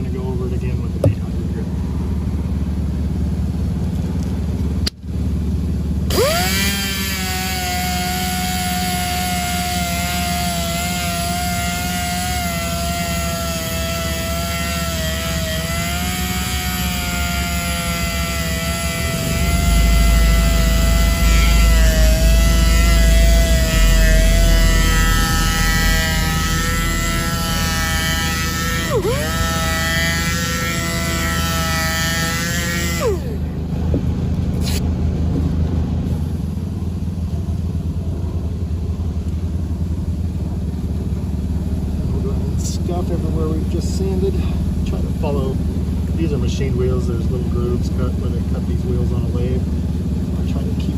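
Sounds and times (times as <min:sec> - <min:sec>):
low engine-like rumble: 0:00.0 - 0:50.9
power sander whining: 0:06.0 - 0:35.5.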